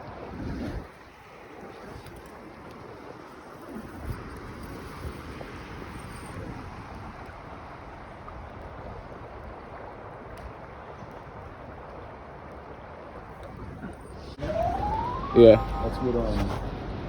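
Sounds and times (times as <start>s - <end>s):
wind buffeting microphone: 0.0s - 15.4s
creek water rushing: 0.0s - 17.0s.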